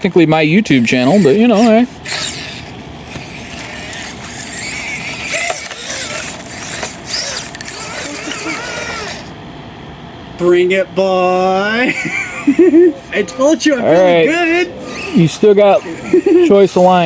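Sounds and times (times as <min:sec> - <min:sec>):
small electric motor whining: 0:00.4 - 0:09.4, 0:11.8 - 0:17.0
clicks and scrapes on rocks: 0:03.1 - 0:09.3.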